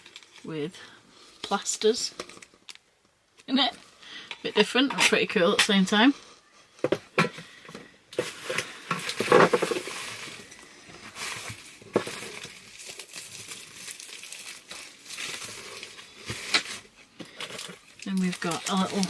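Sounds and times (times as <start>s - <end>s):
packaging crinkling and rustling: 0.0s - 0.5s, 8.2s - 19.0s.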